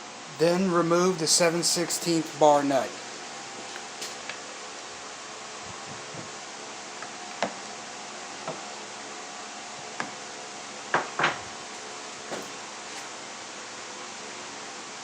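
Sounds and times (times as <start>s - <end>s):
steady hiss: 0.0s - 7.0s.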